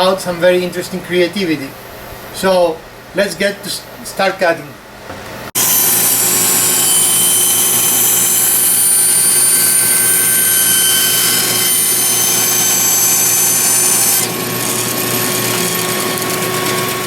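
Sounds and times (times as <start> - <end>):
reciprocating saw whining: 5.6 - 17.0.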